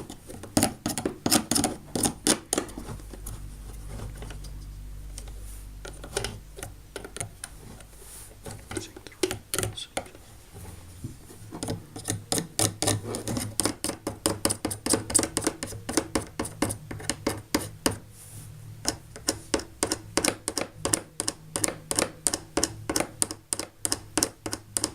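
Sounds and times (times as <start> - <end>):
rapid clicking and tapping: 0.0 - 4.5, 11.6 - 18.0, 18.8 - 24.9
steady low hum: 0.0 - 24.2.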